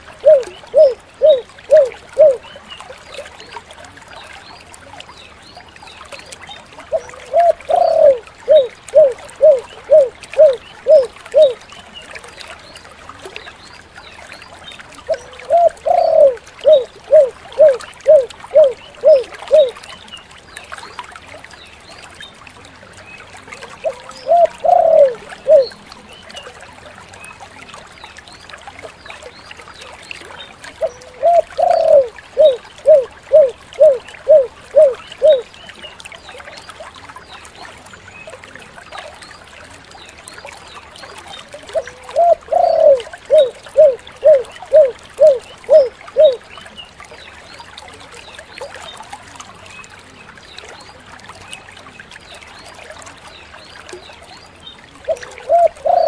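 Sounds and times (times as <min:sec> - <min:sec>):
dove cooing: 0:00.2 - 0:02.4, 0:06.9 - 0:11.6, 0:15.1 - 0:19.7, 0:23.8 - 0:25.8, 0:30.8 - 0:35.4, 0:41.8 - 0:46.4, 0:55.1 - 0:56.0.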